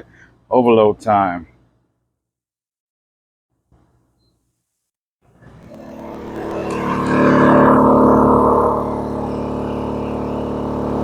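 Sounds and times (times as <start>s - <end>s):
generator engine running hard: 5.4s - 11.0s.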